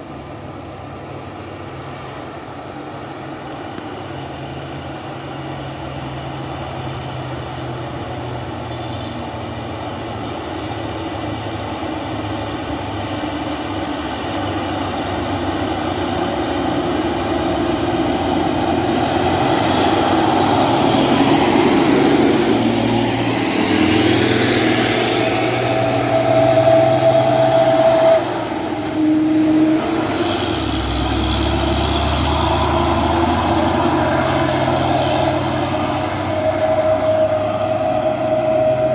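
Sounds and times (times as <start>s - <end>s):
diesel truck engine running: 9.3s - 38.9s
steady whine: 11.2s - 38.9s.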